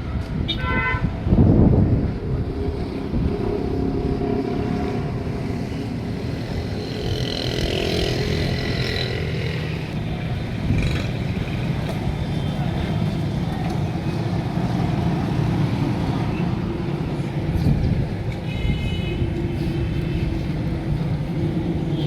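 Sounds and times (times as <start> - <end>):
low engine rumble: 1.4 - 18.4
vehicle engines running: 1.5 - 18.5, 19.1 - 22.0.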